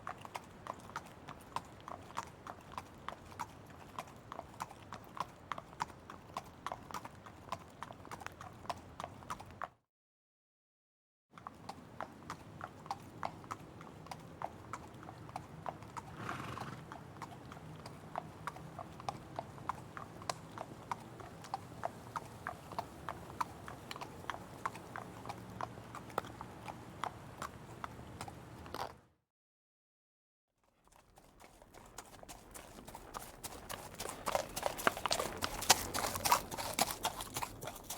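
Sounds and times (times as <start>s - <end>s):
horse hooves clip-clopping: 0.0s - 9.7s, 11.4s - 29.0s, 30.7s - 37.9s
horse breathing: 16.0s - 17.2s, 30.9s - 37.9s.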